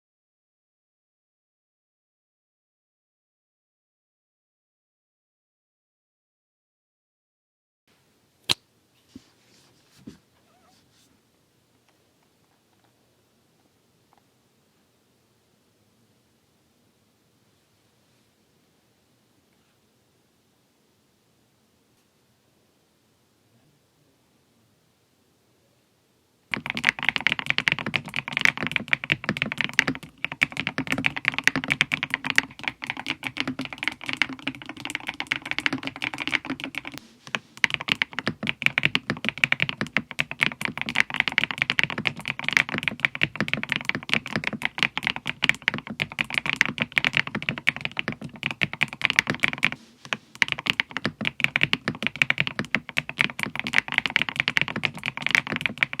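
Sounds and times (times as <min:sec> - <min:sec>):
mechanical keyboard typing: 0:26.5 - 0:56.0.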